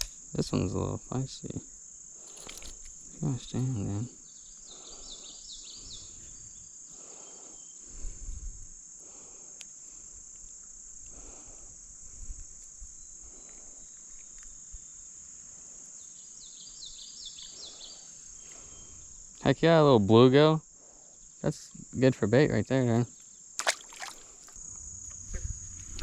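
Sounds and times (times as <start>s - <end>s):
crickets chirring: 0.0s - 26.0s.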